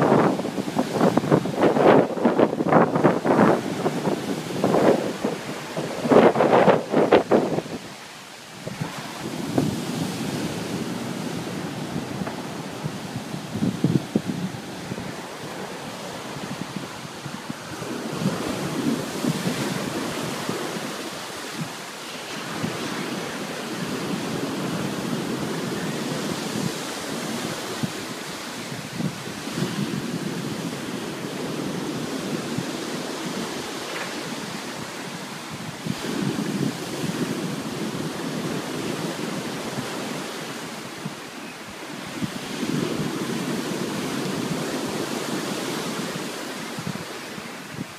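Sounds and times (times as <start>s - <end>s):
heavy waves breaking: 0.0s - 47.9s
wind buffeting microphone: 0.0s - 47.9s.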